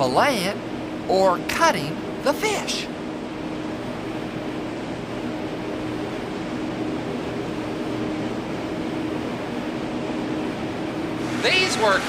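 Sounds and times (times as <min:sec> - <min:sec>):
machinery humming: 0:00.0 - 0:12.0.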